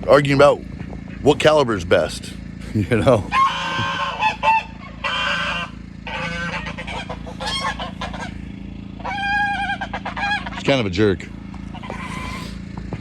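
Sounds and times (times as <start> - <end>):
goose honking: 3.2 - 12.6.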